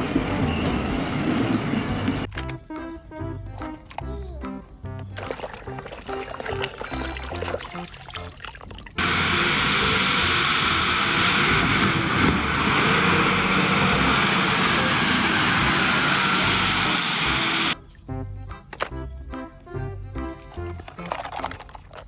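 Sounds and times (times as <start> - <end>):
faint music: 0.0 - 8.9
loud steady roar: 9.0 - 17.8.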